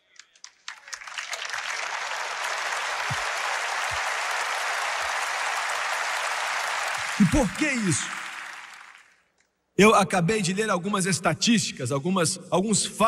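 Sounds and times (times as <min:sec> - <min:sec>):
audience applauding: 0:00.0 - 0:09.3.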